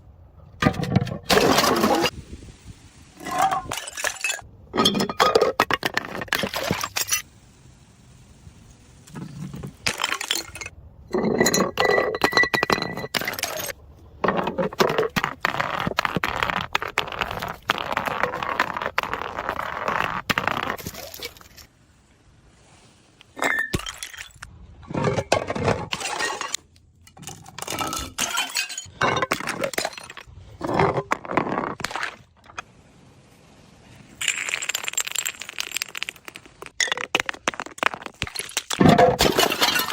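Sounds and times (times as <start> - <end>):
glass bottles clinking and shattering: 3.2 - 7.2, 9.8 - 15.1, 23.4 - 31.0, 34.2 - 39.9.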